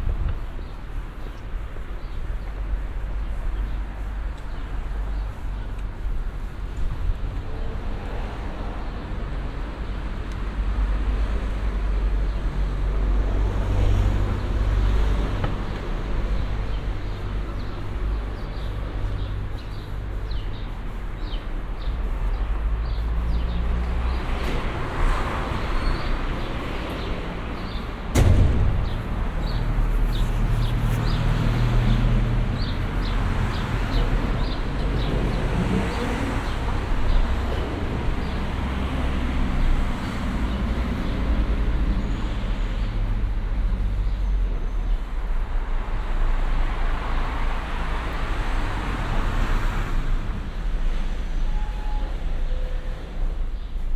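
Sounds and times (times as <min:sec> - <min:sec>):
cars passing: 0:00.0 - 0:51.4
sharp thump: 0:27.6 - 0:32.7.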